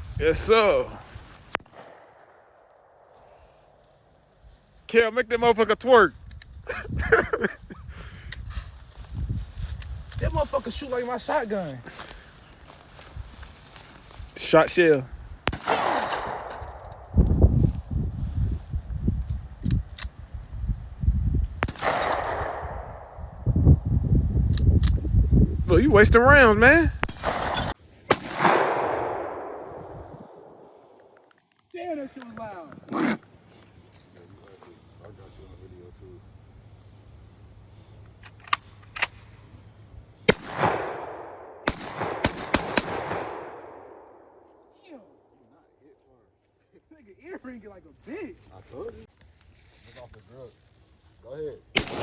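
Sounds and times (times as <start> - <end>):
gunshots cracking: 15.5 - 17.1, 21.6 - 23.2, 27.0 - 30.6, 40.3 - 44.1, 51.8 - 52.0.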